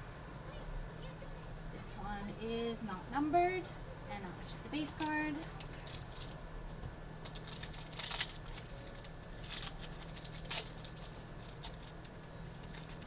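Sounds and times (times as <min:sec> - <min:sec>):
steady low hum: 0:00.0 - 0:13.0
cards and wrappers rustling: 0:04.8 - 0:06.4, 0:07.2 - 0:13.0.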